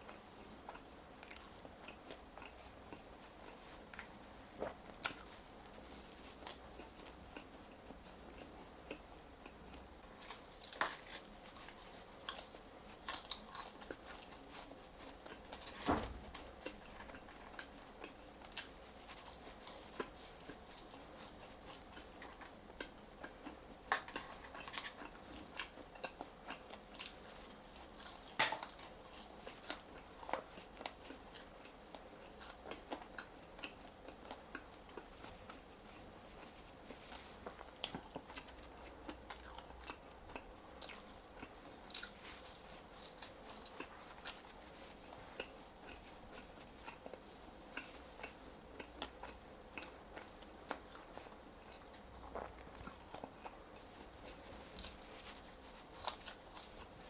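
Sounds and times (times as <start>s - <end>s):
chewing crunchy fries: 0.0s - 57.0s
thump: 15.8s - 16.3s.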